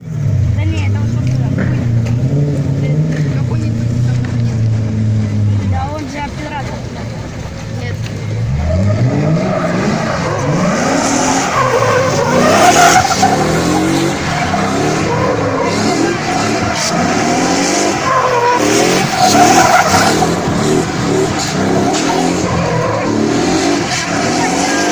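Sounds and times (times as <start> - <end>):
car engine revving: 0.0 - 24.9
tyres squealing: 8.4 - 24.9.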